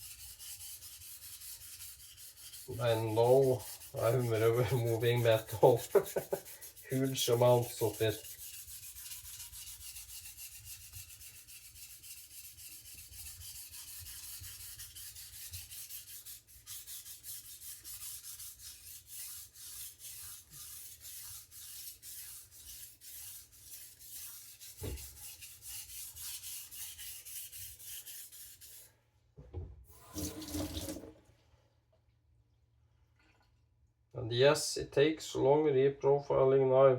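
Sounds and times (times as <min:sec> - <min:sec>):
knife grinding on sharpening stone: 0:03.6 - 0:10.2.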